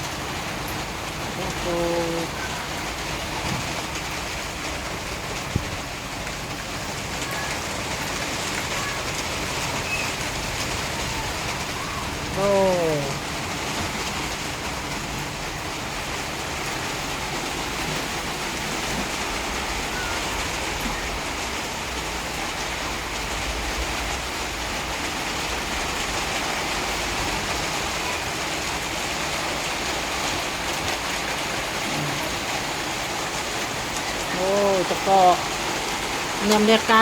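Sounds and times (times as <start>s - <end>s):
hail and rain falling: 0.0s - 37.0s.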